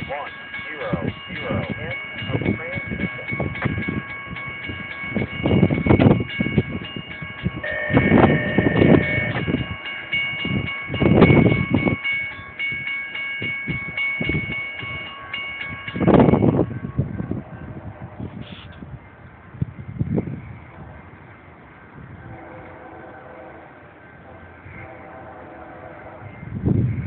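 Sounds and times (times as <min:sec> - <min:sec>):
passing train rumble: 0:00.0 - 0:27.0
locomotive air horn chord: 0:07.6 - 0:09.6, 0:22.2 - 0:26.3.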